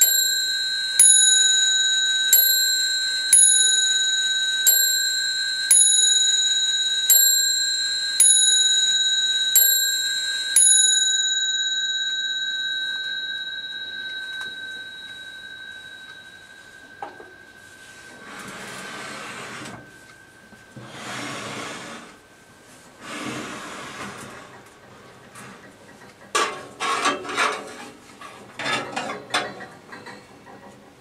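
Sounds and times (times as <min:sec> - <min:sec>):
clock bell striking: 0:00.0 - 0:20.8
soft rush of noise: 0:12.5 - 0:23.6.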